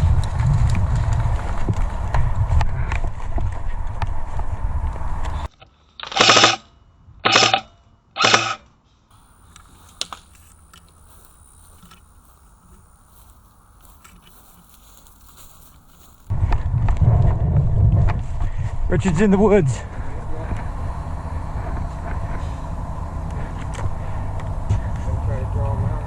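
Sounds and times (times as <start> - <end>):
airsoft rifle bursts: 6.0 - 6.6, 7.3 - 7.6, 8.2 - 8.6
low hiss: 9.1 - 16.3
movement noise: 9.1 - 16.3.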